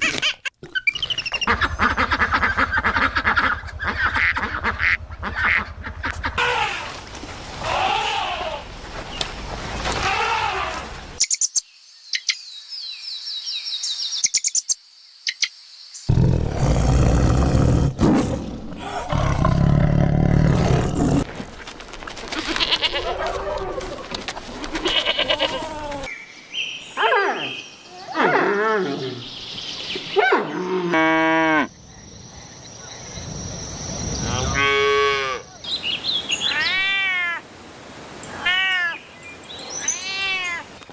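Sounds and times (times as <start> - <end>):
sliding pitched animal calls: 1.2 - 11.2
loud low animal call: 7.6 - 8.8.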